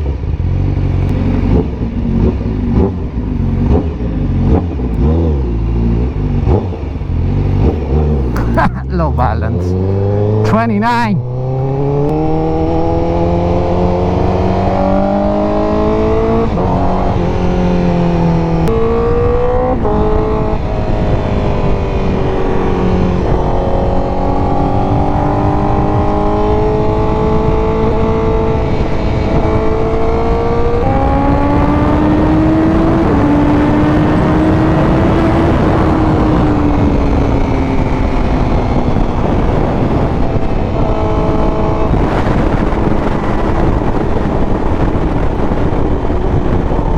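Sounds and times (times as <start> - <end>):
motorcycle engine accelerating: 0.0 - 8.8, 9.7 - 10.5, 11.2 - 46.9
wind rush: 30.2 - 46.9.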